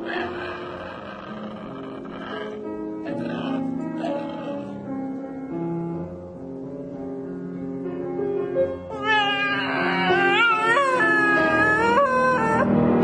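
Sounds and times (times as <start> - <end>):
dog howling: 0.0 - 4.7, 9.0 - 12.7
background music: 0.0 - 13.0.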